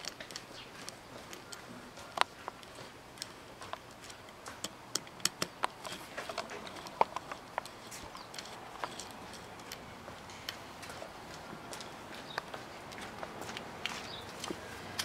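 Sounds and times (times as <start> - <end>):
screwdriver tapping on metal: 0.0 - 10.6.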